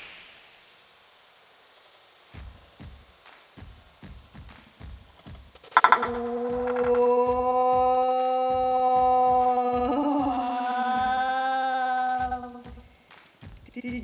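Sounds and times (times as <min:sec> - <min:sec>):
faint low thuds: 0:02.4 - 0:05.6
person singing long note: 0:05.9 - 0:12.8.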